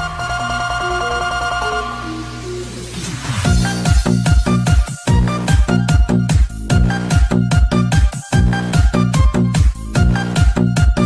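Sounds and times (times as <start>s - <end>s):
electronic dance music: 0.0s - 11.0s
heavy kick drum: 3.5s - 11.0s.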